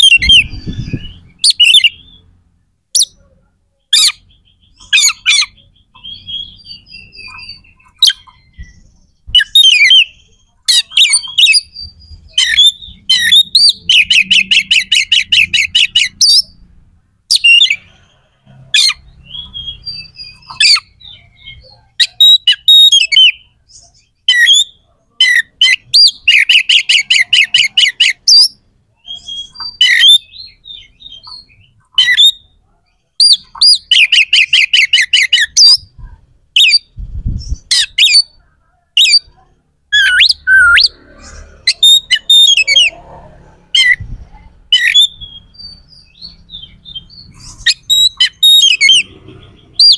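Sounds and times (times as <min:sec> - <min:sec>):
songbird singing harsh varied song: 0:00.0 - 0:16.7, 0:17.3 - 0:49.9.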